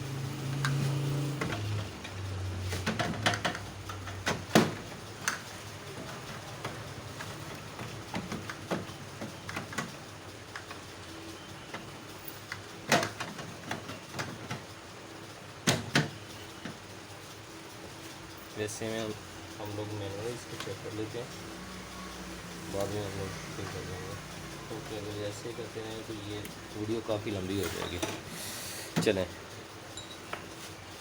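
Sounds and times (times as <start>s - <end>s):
clicks and knocks of handling parts: 0.5s - 10.9s, 11.7s - 14.7s.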